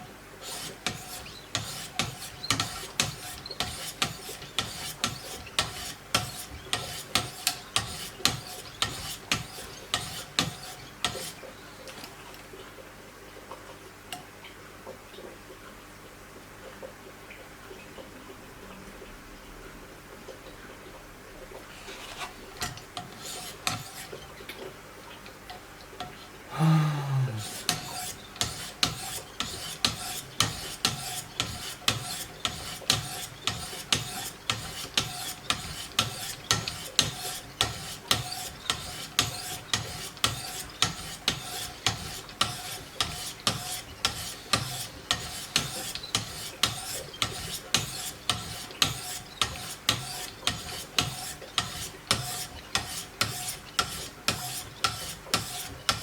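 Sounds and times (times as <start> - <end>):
sharpening stones stroking knife edge: 0.4 - 11.4, 22.2 - 24.2, 27.4 - 56.0.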